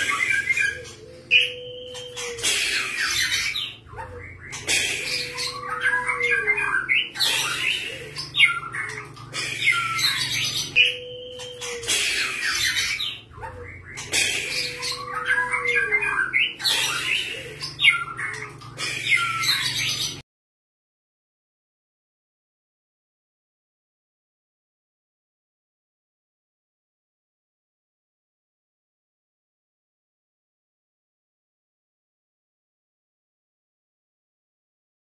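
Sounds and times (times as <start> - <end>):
bird calling: 0.0 - 20.2.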